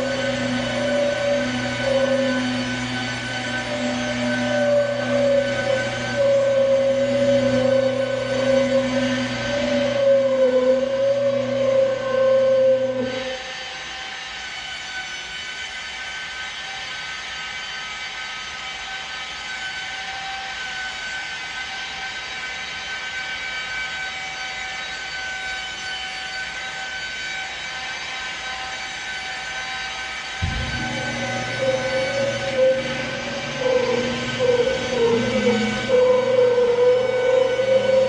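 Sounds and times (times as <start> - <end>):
glass buffing machine whine: 0.0 - 38.0.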